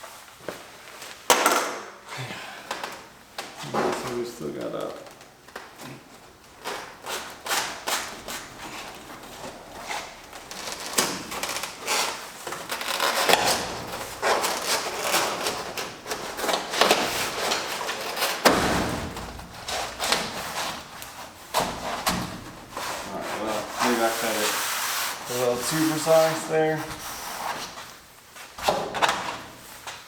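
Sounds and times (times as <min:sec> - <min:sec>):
foam scraping against metal door: 0:06.8 - 0:27.8
heavy thump: 0:18.4 - 0:22.8.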